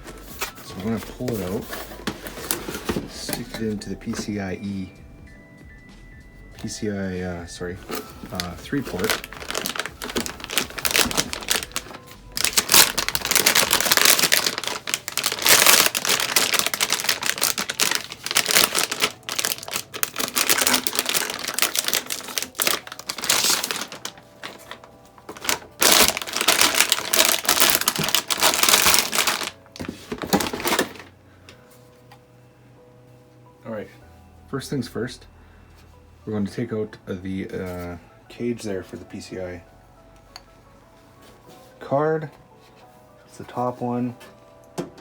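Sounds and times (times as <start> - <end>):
plastic packaging crinkling: 7.6 - 31.1.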